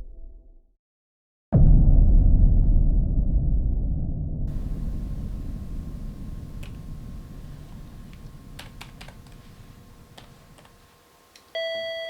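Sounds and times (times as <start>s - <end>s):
low rumble: 1.6s - 10.9s
faint clicks: 6.4s - 11.5s
electronic door chime: 11.6s - 12.0s.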